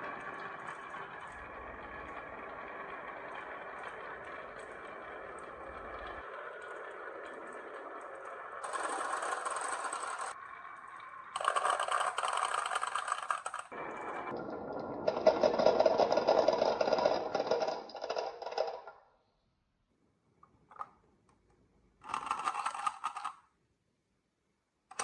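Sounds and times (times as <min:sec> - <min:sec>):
marbles rolling down a track: 0:00.0 - 0:10.4, 0:11.3 - 0:19.0, 0:22.0 - 0:23.5.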